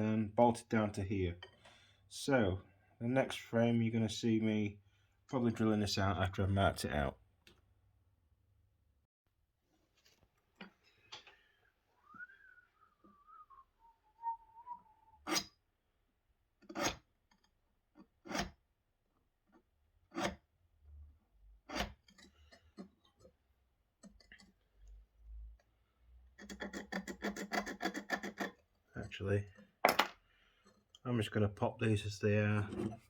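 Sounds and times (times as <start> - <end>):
man whistling: 12.0 - 15.2.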